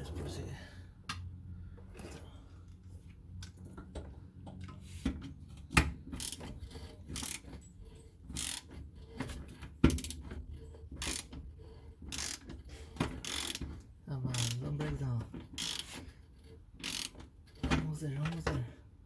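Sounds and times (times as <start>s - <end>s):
ratchet wrench clicking: 6.2s - 7.5s, 8.3s - 8.7s, 9.9s - 10.2s, 11.0s - 11.3s, 12.1s - 12.5s, 13.2s - 13.7s, 14.3s - 14.6s, 15.5s - 16.0s, 16.8s - 17.3s.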